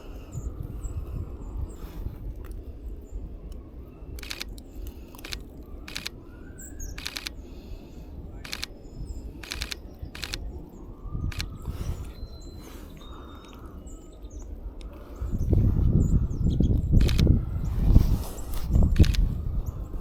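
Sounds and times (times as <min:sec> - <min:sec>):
camera shutter clicks: 0:04.2 - 0:04.6, 0:05.2 - 0:06.1, 0:07.0 - 0:07.4, 0:08.5 - 0:08.7, 0:09.4 - 0:10.4, 0:11.3 - 0:11.5, 0:17.0 - 0:17.3, 0:18.9 - 0:19.2
faint bird chirps: 0:08.2 - 0:17.2.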